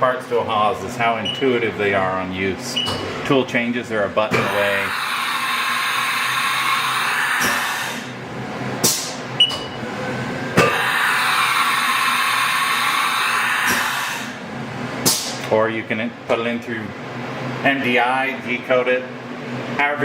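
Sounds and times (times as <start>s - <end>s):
sharp machine clunks: 4.3s - 4.7s
air hiss: 4.4s - 8.1s.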